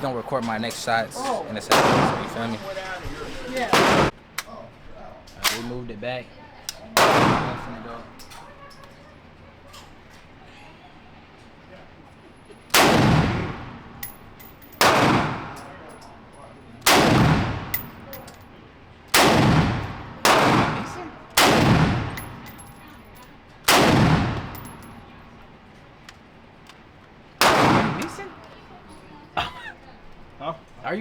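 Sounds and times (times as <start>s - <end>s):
gunshots with echo: 1.7s - 3.0s, 3.6s - 4.1s, 7.0s - 7.8s, 12.7s - 15.9s, 16.9s - 18.4s, 19.2s - 23.1s, 23.7s - 25.1s, 27.4s - 28.4s.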